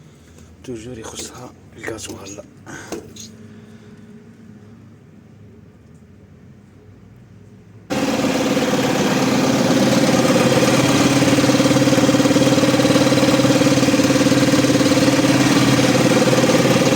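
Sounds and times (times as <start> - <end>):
truck engine idling: 7.9 - 16.9.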